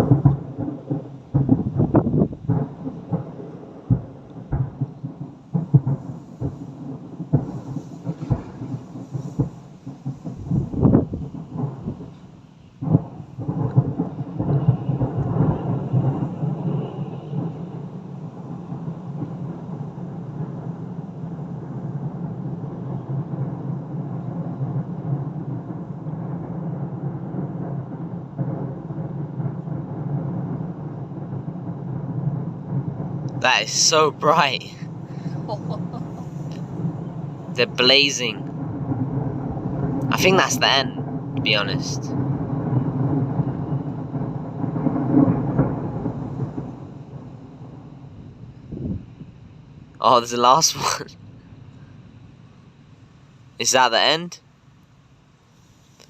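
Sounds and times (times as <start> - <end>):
fireworks booming: 0.0 - 51.7
sharp firework bang: 7.3 - 12.2.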